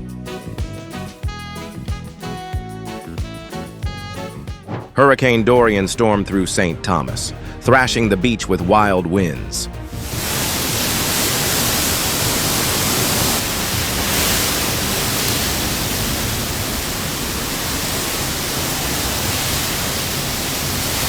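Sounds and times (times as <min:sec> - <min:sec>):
strong wind blowing: 0:09.9 - 0:21.0.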